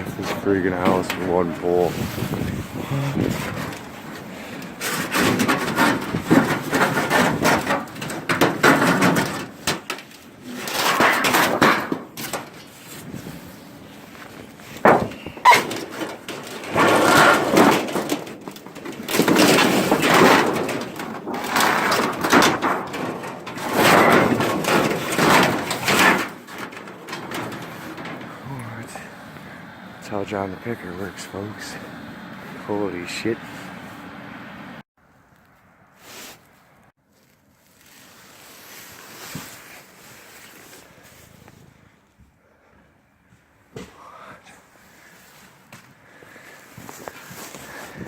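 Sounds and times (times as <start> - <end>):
sheet metal scraping and rattling: 0.0 - 33.9.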